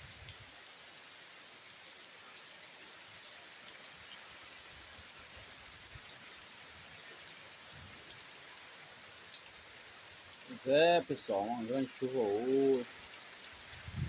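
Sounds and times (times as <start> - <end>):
heavy rain falling: 3.0 - 14.0.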